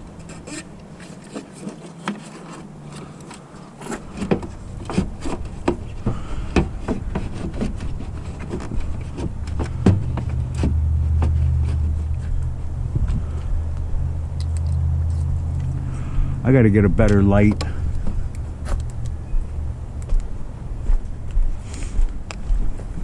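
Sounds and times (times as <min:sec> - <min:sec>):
plastic clicks and scraping: 0:00.1 - 0:12.5, 0:17.0 - 0:19.2
low rumble: 0:08.7 - 0:23.0.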